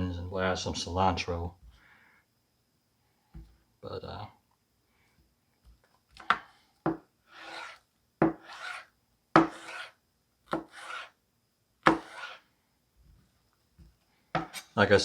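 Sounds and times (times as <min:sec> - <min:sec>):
knife rasping through onion: 0:07.3 - 0:11.2, 0:11.9 - 0:12.4.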